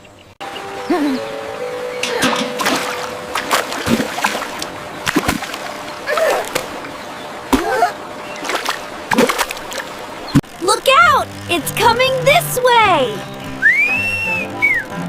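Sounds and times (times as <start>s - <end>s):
water splashing: 2.0s - 11.6s.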